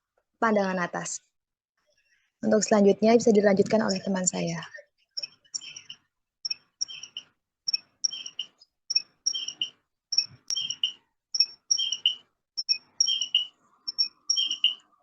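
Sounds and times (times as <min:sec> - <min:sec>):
cricket chirping: 0:06.8 - 0:14.8.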